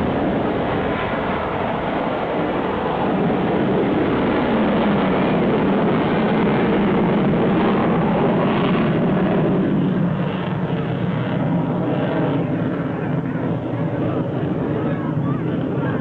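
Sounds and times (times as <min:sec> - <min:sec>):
jet engines flying past: 0:00.0 - 0:16.0.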